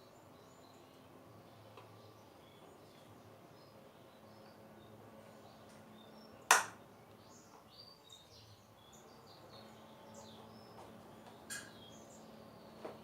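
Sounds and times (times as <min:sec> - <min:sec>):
small birds chirping: 0:00.0 - 0:13.0
loud sharp knock: 0:06.5 - 0:06.8.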